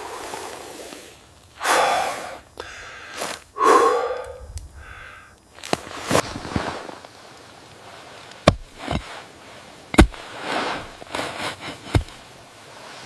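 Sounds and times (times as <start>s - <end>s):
hissing noise: 0.0s - 13.0s.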